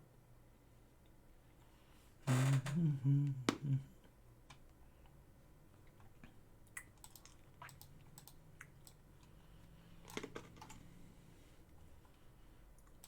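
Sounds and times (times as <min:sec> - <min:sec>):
computer keyboard typing: 0:06.9 - 0:09.0.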